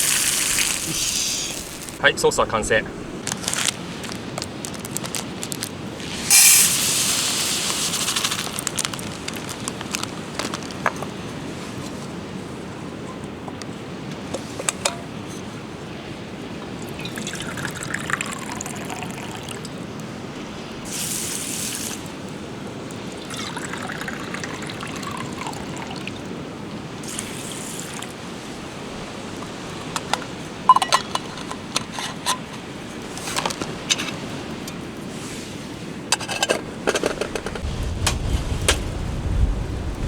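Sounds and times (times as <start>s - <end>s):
liquid pouring and trickling: 0.0s - 2.0s, 3.3s - 10.8s, 16.8s - 19.7s, 22.9s - 26.3s, 27.0s - 28.2s
sharp crackles: 0.0s - 2.0s, 3.2s - 10.9s.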